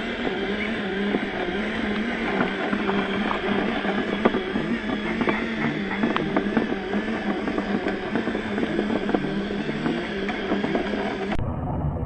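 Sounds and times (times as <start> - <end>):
toy truck motor hum: 0.0 - 11.4
sharp clicks and knocks: 0.2 - 11.4.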